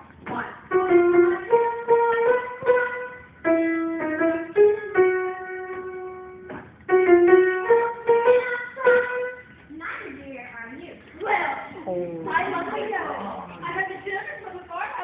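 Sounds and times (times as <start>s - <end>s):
piano playing simple melody: 0.0s - 9.7s.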